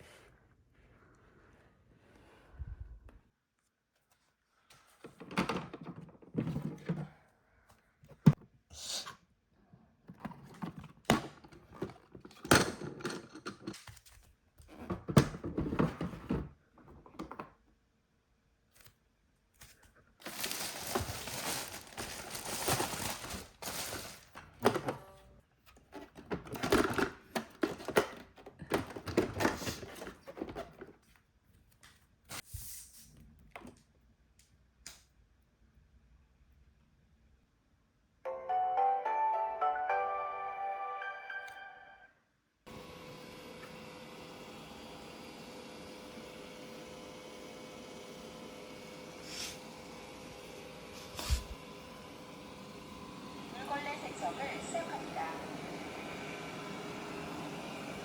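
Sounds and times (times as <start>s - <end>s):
objects thudding and knocking: 14.7s - 17.6s, 20.2s - 25.2s
packaging rustling: 19.6s - 24.6s.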